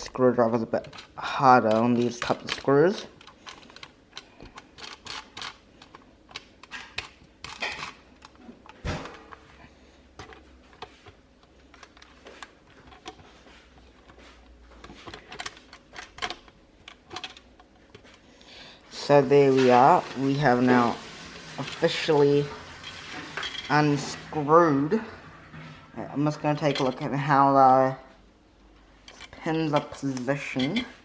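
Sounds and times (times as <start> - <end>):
screws being turned by hand: 0.7 - 8.4.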